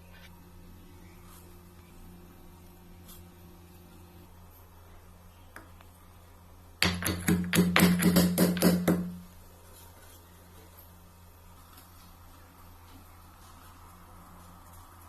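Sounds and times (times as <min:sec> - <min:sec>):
sharp knocks: 0:06.8 - 0:09.2.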